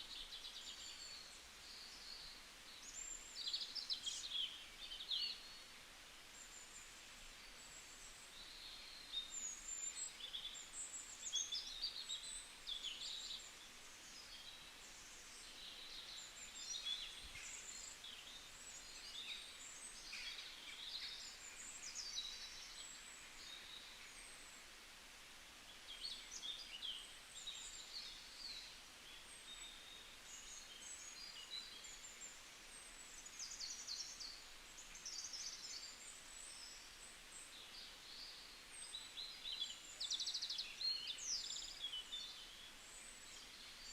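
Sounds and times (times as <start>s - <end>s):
faint steady hiss: 0.0s - 43.9s
songbirds chirping and trilling: 0.0s - 43.9s.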